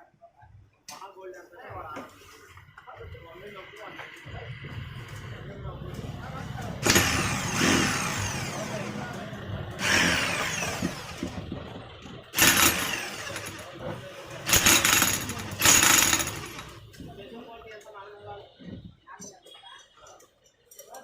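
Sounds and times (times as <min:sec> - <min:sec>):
motor winding down: 0:04.2 - 0:11.6, 0:12.4 - 0:16.8
electric chipping hammer bursts: 0:06.8 - 0:11.4, 0:12.3 - 0:16.8.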